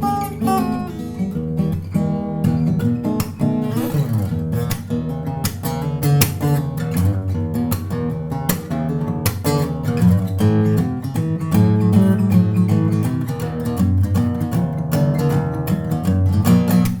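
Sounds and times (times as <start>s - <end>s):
acoustic guitar strumming chords: 0.0s - 17.0s.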